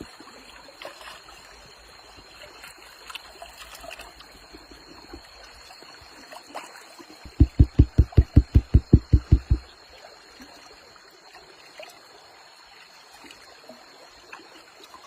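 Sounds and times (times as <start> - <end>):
faint trickling water: 0.0 - 15.0
rhythmic low thumps: 7.3 - 9.7.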